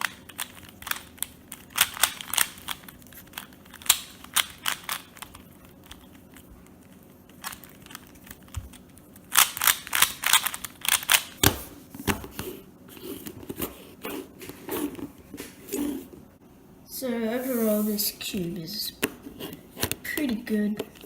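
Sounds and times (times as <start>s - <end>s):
plastic puzzle cube layers clicking: 0.0s - 6.1s, 7.4s - 11.4s.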